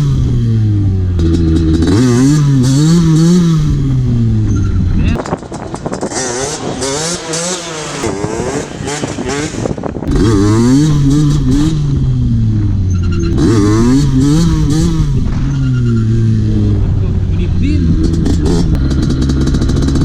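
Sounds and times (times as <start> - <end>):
two-stroke engine revving: 0.0 - 20.0.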